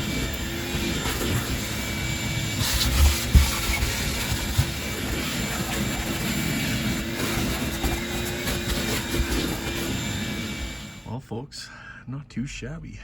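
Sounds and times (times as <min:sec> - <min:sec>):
motor droning: 0:00.0 - 0:11.1.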